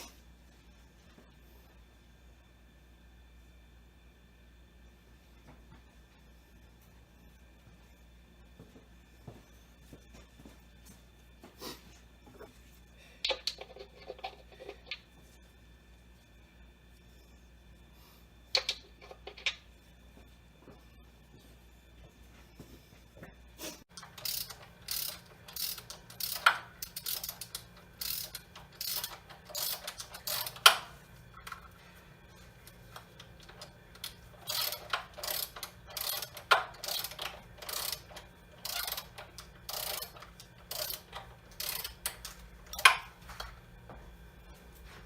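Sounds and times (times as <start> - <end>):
ratchet wrench clicking: 24.0 - 30.8, 33.4 - 42.9.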